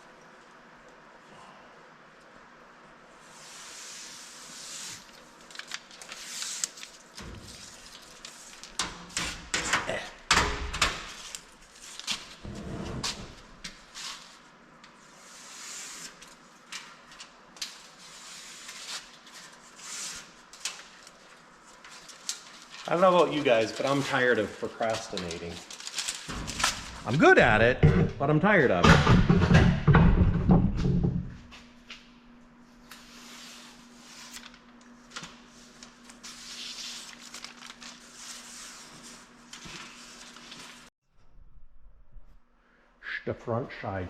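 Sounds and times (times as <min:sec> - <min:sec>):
knocks and clunks on sheet metal: 0:26.3 - 0:31.4.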